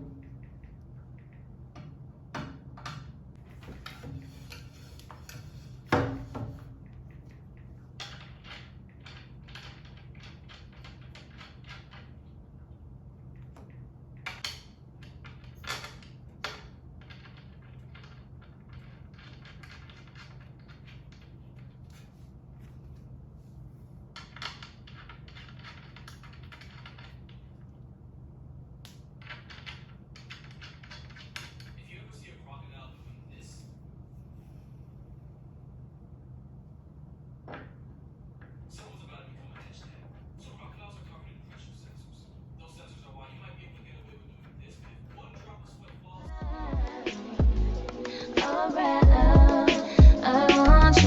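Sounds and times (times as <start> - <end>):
low steady hum: 0.0 - 51.0.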